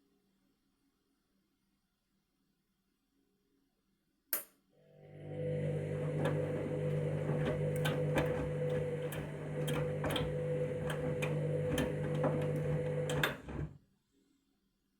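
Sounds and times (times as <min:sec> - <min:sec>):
washing machine motor hum: 0:04.8 - 0:13.8.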